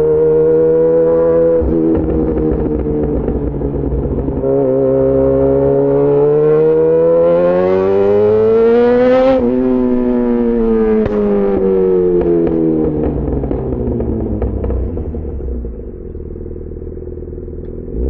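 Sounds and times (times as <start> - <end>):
motorcycle engine accelerating: 0.0 - 18.0.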